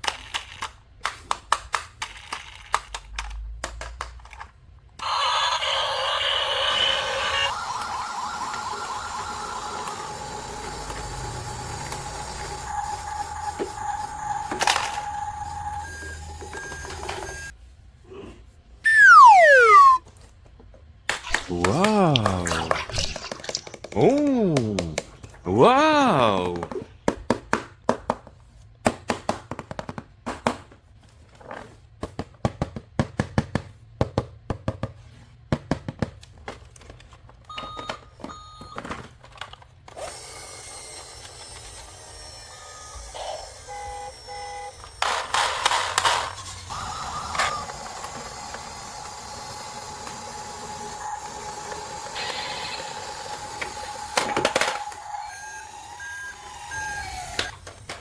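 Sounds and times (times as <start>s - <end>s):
plastic toy clicks and knocks: 0.0s - 4.6s, 45.0s - 46.5s, 53.6s - 55.0s
long steady electronic tone: 18.9s - 20.0s
toy electronic beeps: 18.9s - 20.0s.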